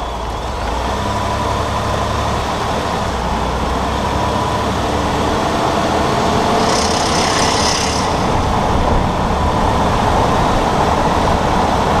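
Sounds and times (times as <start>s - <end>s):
truck running gear grinding: 0.0s - 12.0s.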